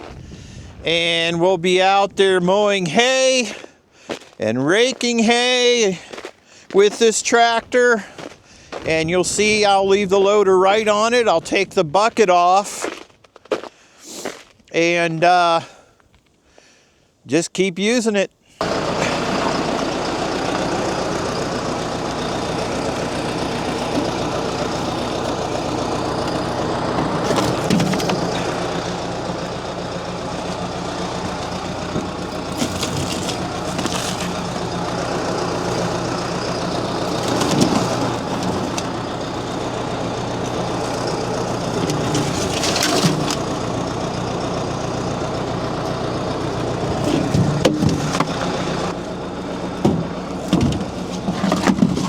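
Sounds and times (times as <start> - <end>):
tractor diesel engine running: 0.0 - 13.0, 18.6 - 52.0
loud rattling: 18.6 - 52.0.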